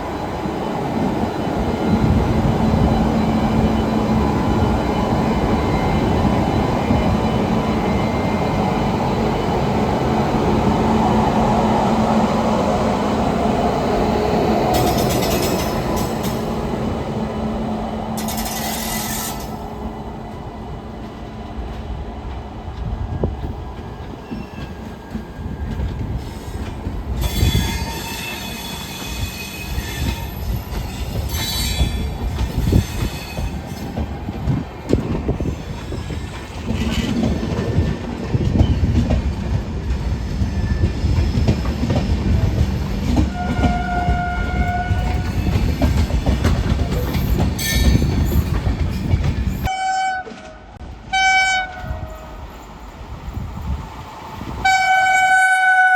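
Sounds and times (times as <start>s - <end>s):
train wheels rumbling on rail: 0.0s - 55.9s
train horn: 43.2s - 45.4s, 49.7s - 52.5s, 54.6s - 55.9s.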